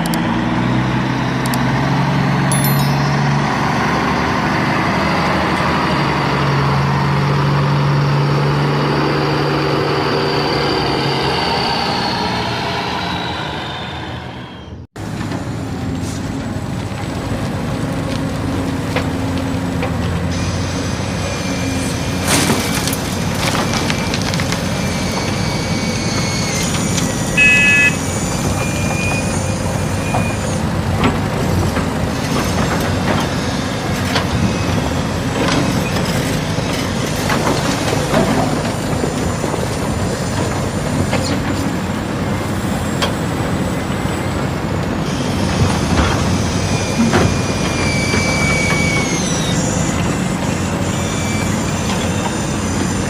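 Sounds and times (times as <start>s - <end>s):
short pitched beep: 2.5s - 3.8s, 27.4s - 28.1s
toy excavator motor whine: 25.1s - 29.5s, 45.1s - 53.0s.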